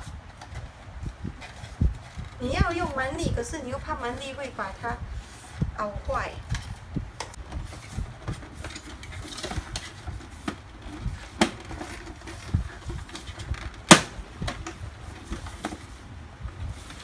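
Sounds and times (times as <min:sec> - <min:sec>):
hard plastic parts clicking: 0:06.5 - 0:16.0.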